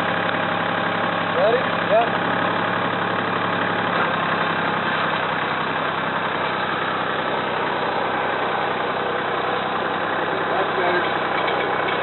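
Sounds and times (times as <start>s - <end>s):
tractor engine running: 0.0s - 12.0s.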